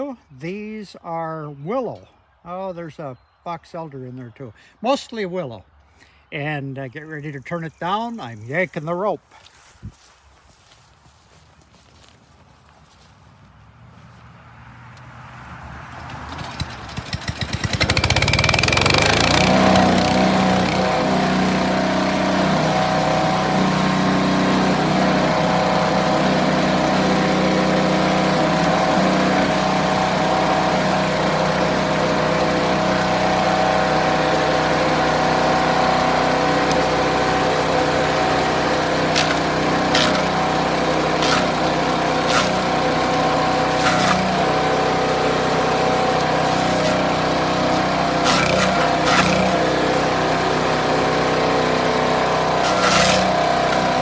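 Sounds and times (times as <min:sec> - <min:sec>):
wood chipper engine running: 0:15.0 - 0:54.0
sharp cracks: 0:39.1 - 0:40.4, 0:41.2 - 0:42.7, 0:46.2 - 0:49.7.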